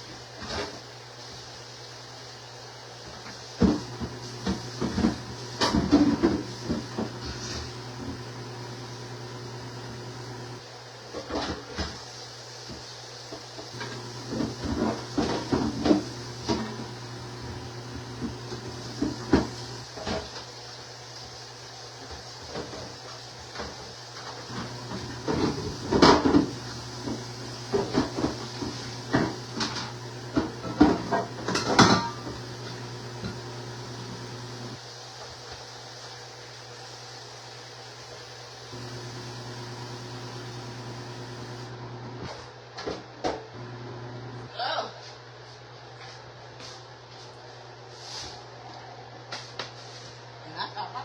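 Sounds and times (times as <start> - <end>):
containers and fridge drawers clattering: 3.6 - 8.2, 24.5 - 33.5.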